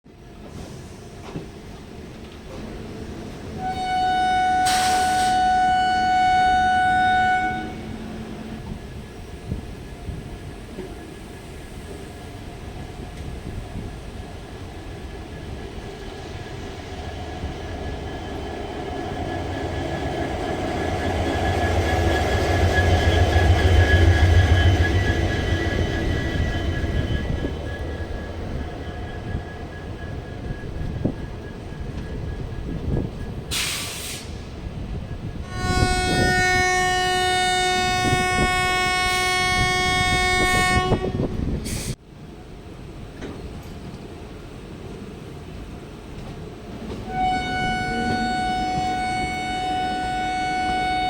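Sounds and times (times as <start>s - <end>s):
locomotive engine humming: 0.2s - 33.6s, 42.4s - 51.0s
locomotive horn blast: 3.6s - 8.3s, 35.4s - 41.4s, 47.0s - 51.0s
short hiss: 33.5s - 34.4s.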